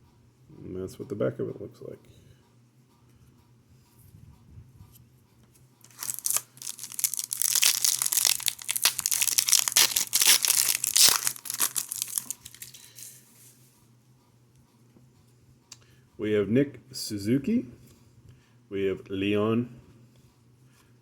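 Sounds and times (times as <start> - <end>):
foil wrapper tearing and crinkling: 5.8 - 13.0.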